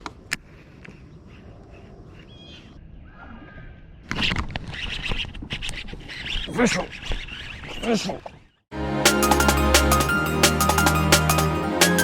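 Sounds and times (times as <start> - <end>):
faint bird calls: 0.5 - 4.0.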